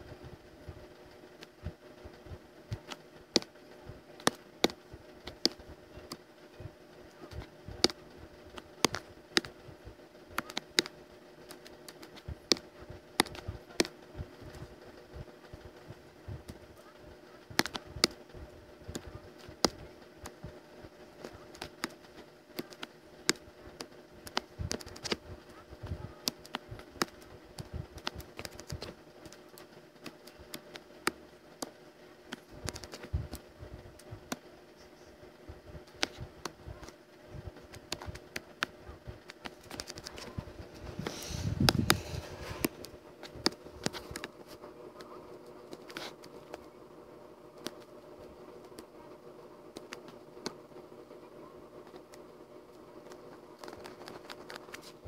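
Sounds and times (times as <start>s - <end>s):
steady electrical hum: 0.0s - 55.0s
keyboard clicks: 7.2s - 9.6s, 11.5s - 14.7s, 17.5s - 18.2s, 18.9s - 20.4s, 21.2s - 25.2s, 25.8s - 31.7s, 32.3s - 33.4s, 35.8s - 37.0s, 37.6s - 44.4s, 49.7s - 50.6s.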